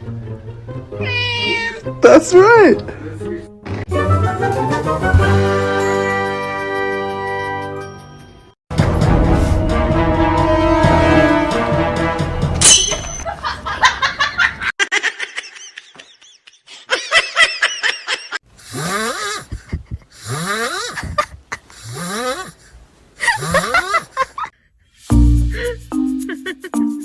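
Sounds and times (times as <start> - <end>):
person laughing: 13.2 - 24.6, 25.5 - 27.0.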